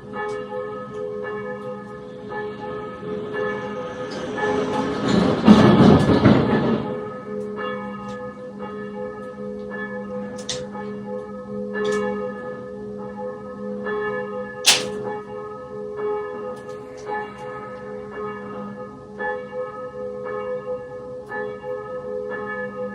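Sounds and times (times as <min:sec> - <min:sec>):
church bells ringing: 0:00.0 - 0:22.9
sharp clicks: 0:14.7 - 0:15.0.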